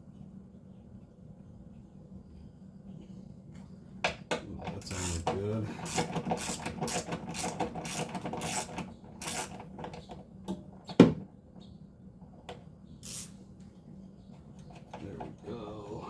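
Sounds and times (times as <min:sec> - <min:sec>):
hand ratchet rasping: 0:04.9 - 0:09.6.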